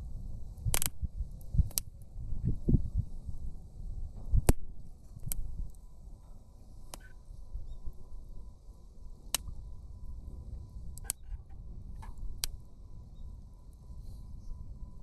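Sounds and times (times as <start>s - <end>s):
campfire burning: 0.0s - 15.0s
wood crackling pops: 0.6s - 1.0s, 4.3s - 5.8s, 9.3s - 9.6s, 11.0s - 12.6s.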